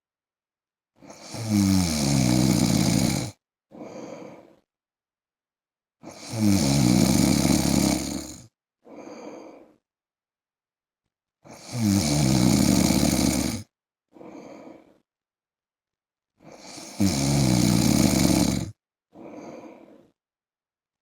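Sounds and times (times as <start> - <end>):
man snoring: 1.0 - 4.5, 6.0 - 9.5, 11.5 - 14.8, 16.4 - 20.1
soft breath: 3.7 - 4.7, 8.8 - 9.9, 14.1 - 15.1, 19.1 - 20.2.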